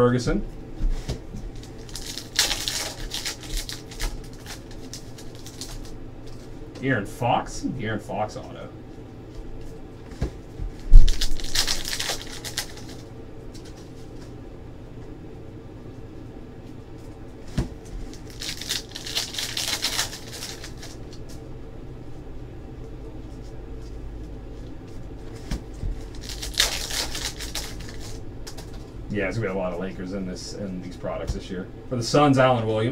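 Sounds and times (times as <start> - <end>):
handling of cards: 1.0 - 6.5, 9.3 - 14.4, 16.9 - 21.4, 23.2 - 28.9
wrappers crinkling and tearing: 1.5 - 6.5, 10.9 - 13.9, 18.0 - 21.3, 24.6 - 28.9.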